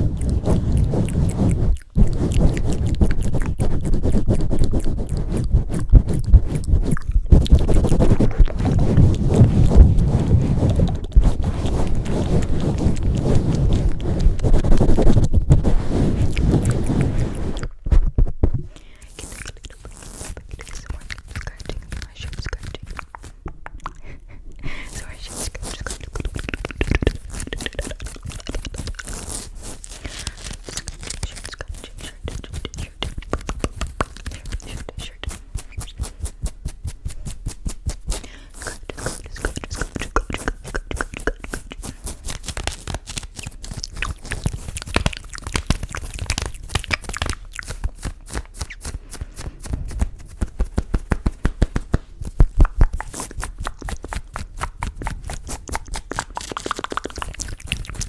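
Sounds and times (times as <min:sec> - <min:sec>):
crackling clicks and rubs on microphone: 0:00.0 - 0:24.0, 0:24.7 - 0:58.0
thumps on microphone: 0:17.8 - 0:18.7.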